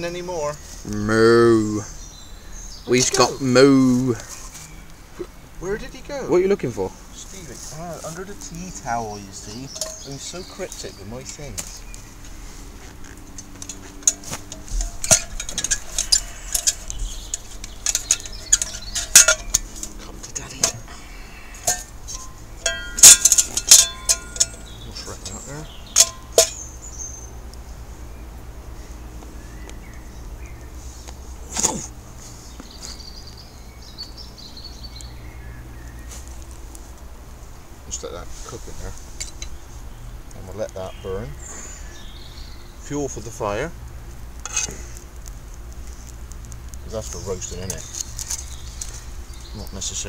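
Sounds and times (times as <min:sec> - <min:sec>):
bird twittering faintly: 0:00.0 - 0:50.0
outdoor background noise: 0:00.0 - 0:50.0
metal cookware clinking: 0:09.7 - 0:10.3, 0:13.4 - 0:20.8, 0:21.6 - 0:26.6, 0:44.4 - 0:44.8.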